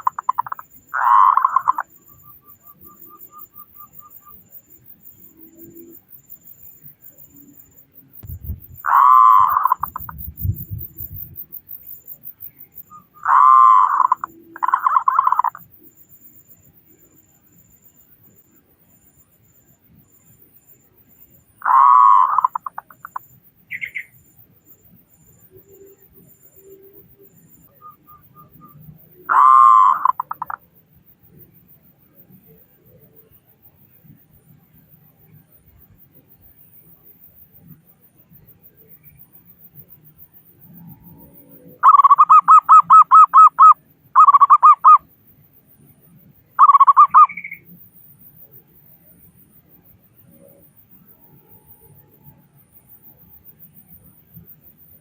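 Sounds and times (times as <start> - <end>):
dove cooing: 0.0 - 1.9, 8.8 - 10.2, 13.2 - 15.6, 21.6 - 23.2, 29.3 - 30.6, 41.8 - 45.0, 46.6 - 47.3.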